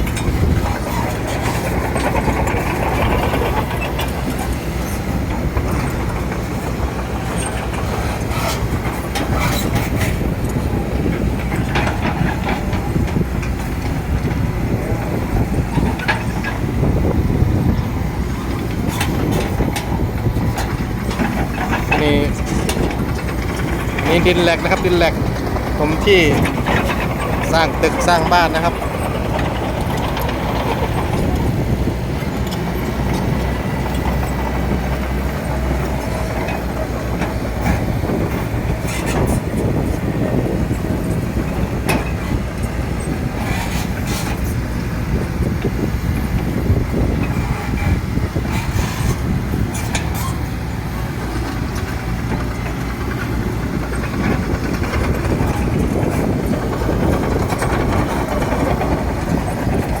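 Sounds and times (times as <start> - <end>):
excavator diesel engine running: 0.0 - 60.0.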